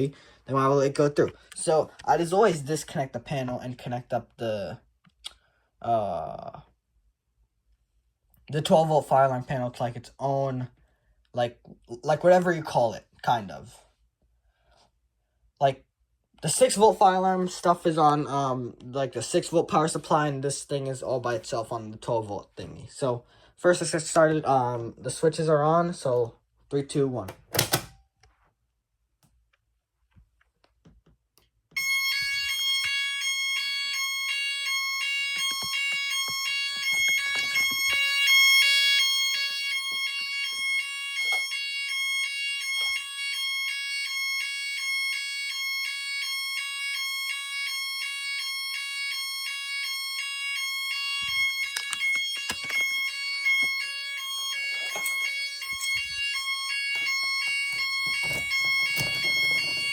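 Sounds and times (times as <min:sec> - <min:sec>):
pulsing fire alarm siren: 0:31.8 - 0:59.9.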